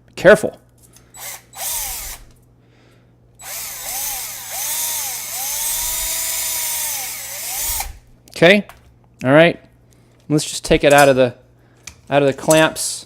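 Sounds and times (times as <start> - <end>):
drill motor whine: 1.2 - 2.3, 3.4 - 8.0
power drill grinding into metal: 1.2 - 2.4, 3.4 - 8.0.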